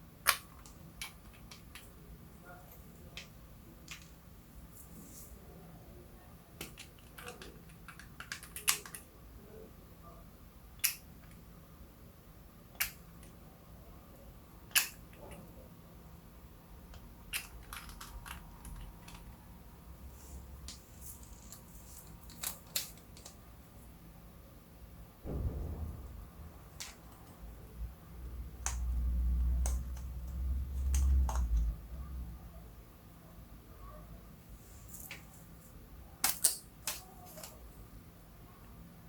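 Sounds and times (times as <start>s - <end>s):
plastic clicks and snaps: 10.8s - 11.4s, 12.8s - 13.4s, 14.7s - 15.4s, 29.6s - 31.7s.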